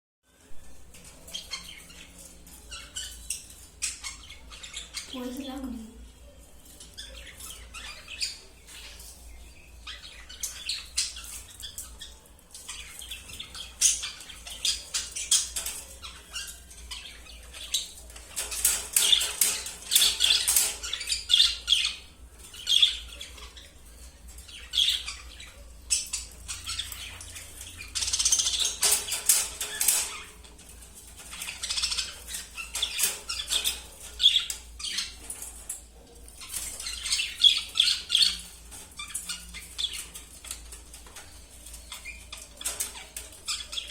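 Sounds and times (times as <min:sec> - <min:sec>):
wire cage clicking and rattling: 0:11.3 - 0:21.4, 0:25.5 - 0:43.9.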